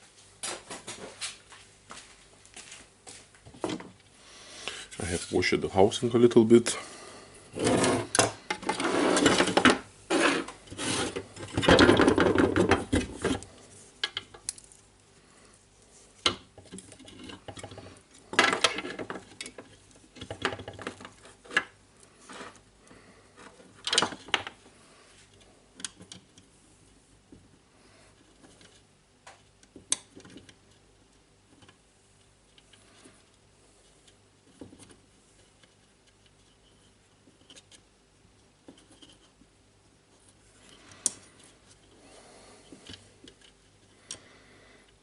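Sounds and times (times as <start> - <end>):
short scrapes: 7.5 - 9.5, 10.1 - 11.3
plastic parts knocking and clicking: 8.1 - 9.8, 11.1 - 14.6, 16.2 - 21.8, 23.4 - 24.6, 28.3 - 30.7.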